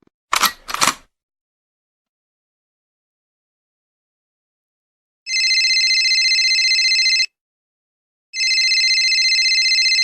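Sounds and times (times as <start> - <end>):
telephone bell ringing: 5.3 - 7.4, 8.4 - 10.0.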